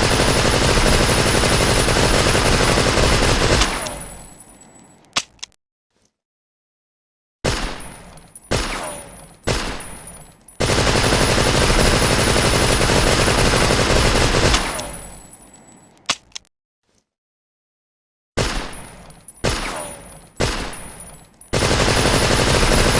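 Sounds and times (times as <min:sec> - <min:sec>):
submachine gun firing: 0:00.0 - 0:04.2, 0:08.5 - 0:10.0, 0:10.6 - 0:15.1, 0:19.4 - 0:22.9.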